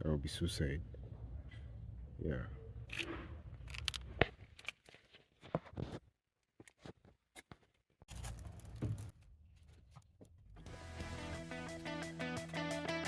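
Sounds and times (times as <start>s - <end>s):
sharp clicks and knocks of handling: 2.9s - 5.0s.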